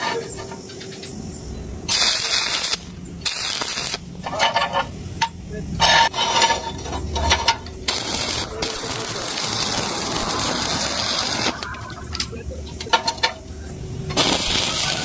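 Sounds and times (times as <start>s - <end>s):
welding arc crackling: 1.8s - 4.3s, 7.6s - 15.0s.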